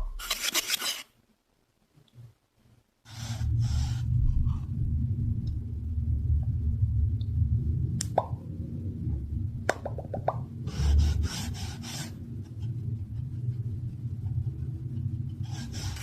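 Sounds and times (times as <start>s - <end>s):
scratchy hisses: 3.1s - 4.2s, 10.6s - 16.0s
low rubbing rumble: 3.1s - 16.0s.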